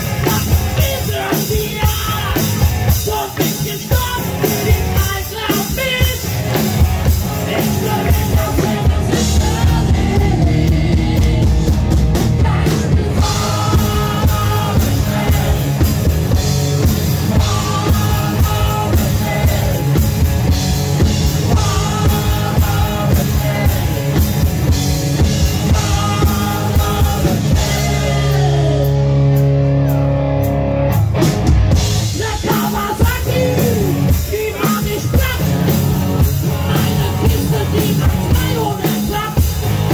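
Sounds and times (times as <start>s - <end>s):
rock band playing: 0.0s - 39.9s
person singing: 7.1s - 20.3s, 21.3s - 24.3s, 25.5s - 29.1s, 32.1s - 39.9s.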